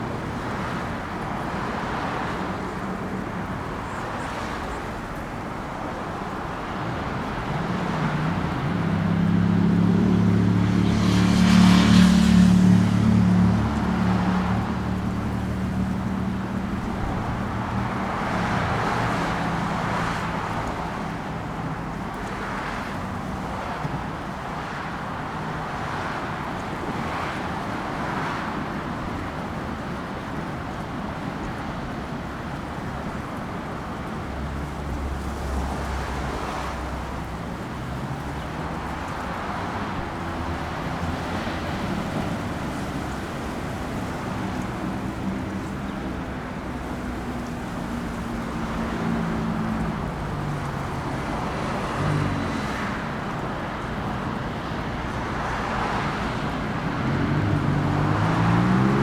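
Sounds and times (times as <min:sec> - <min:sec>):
vehicle engine hum passing: 0:00.0 - 0:24.8, 0:25.7 - 0:59.0
road traffic: 0:00.0 - 0:59.0.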